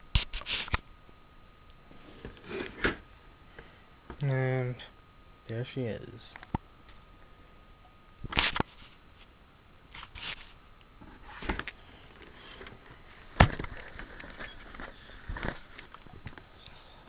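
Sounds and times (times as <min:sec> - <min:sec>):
handling rustles and scrapes: 0:00.2 - 0:00.8, 0:08.3 - 0:16.2.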